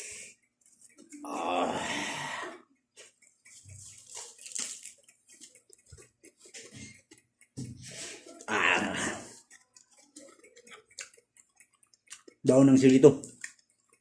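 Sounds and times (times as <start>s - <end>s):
wet chewing and crunching: 2.9s - 7.6s, 8.2s - 14.0s
mouth clicks and smacks: 8.8s - 12.6s, 13.2s - 14.0s.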